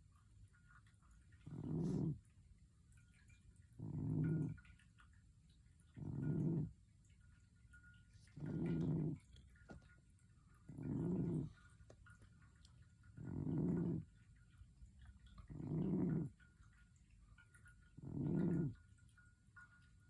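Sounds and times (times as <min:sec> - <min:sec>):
cat snoring: 0:01.4 - 0:02.2, 0:03.8 - 0:04.7, 0:06.0 - 0:06.8, 0:08.2 - 0:09.4, 0:10.7 - 0:11.7, 0:13.1 - 0:14.2, 0:15.3 - 0:16.5, 0:18.0 - 0:18.9.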